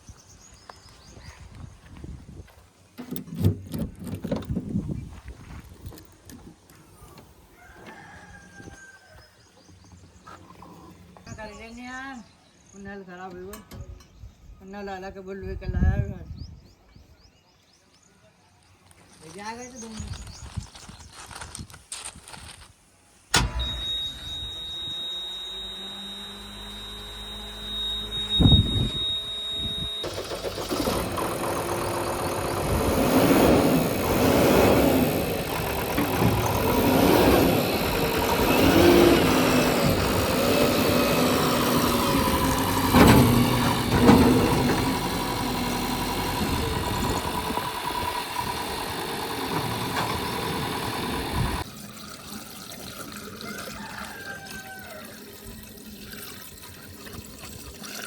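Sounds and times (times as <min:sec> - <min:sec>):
steady high whine: 0:23.3 - 0:51.6
diesel engine revving: 0:23.4 - 0:51.7.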